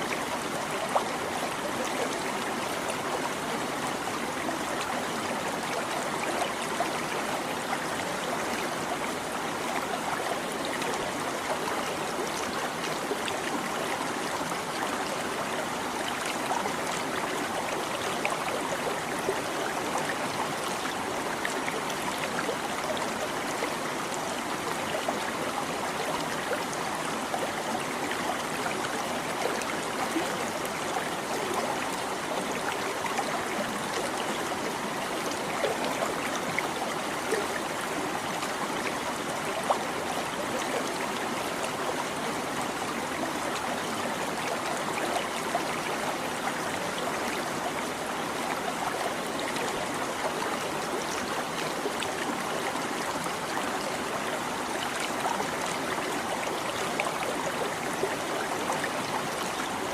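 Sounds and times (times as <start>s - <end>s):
stream babbling over rocks: 0.0s - 59.9s.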